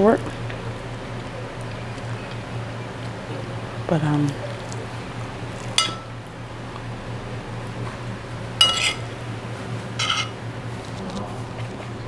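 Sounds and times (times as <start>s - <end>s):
utensil clinking on dish: 5.7s - 6.2s, 8.6s - 9.2s, 10.0s - 10.4s.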